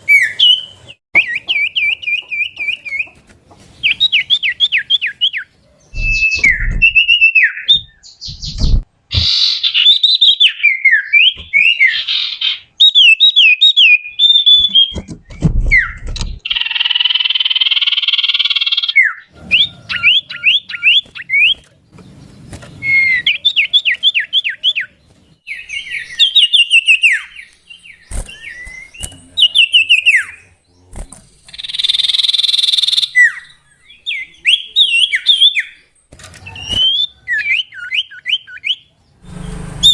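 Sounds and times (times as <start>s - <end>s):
bird singing whistled notes: 3.8s - 21.6s, 22.8s - 39.9s
low thumps: 6.0s - 7.2s, 7.8s - 8.9s
harsh buzzy bird call: 36.4s - 39.9s.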